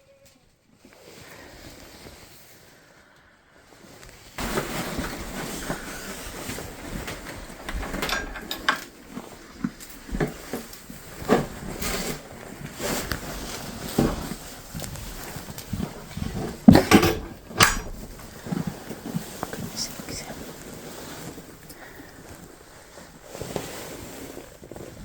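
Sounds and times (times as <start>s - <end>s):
straw bedding rustling: 3.7s - 16.7s, 17.9s - 25.0s
hoof knocks and thumps: 4.4s - 19.7s.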